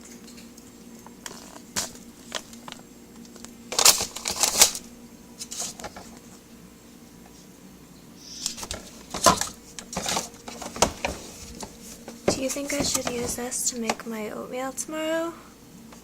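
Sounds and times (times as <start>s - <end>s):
packaging rustling: 3.4s - 6.2s, 8.5s - 13.6s
containers clicking and knocking: 8.6s - 14.0s.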